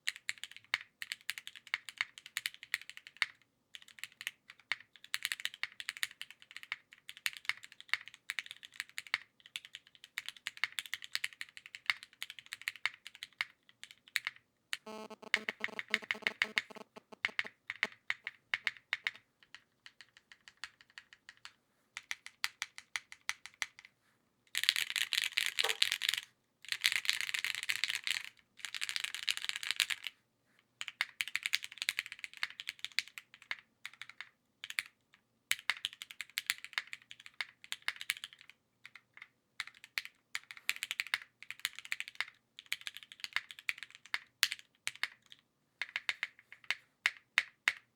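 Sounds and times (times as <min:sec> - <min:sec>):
mechanical keyboard typing: 0:14.9 - 0:19.2, 0:25.6 - 0:26.0.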